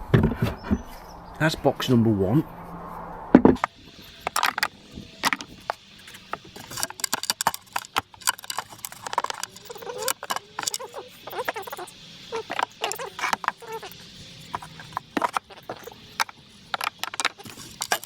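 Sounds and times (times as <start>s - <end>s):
tools clinking and knocking: 3.6s - 18.0s.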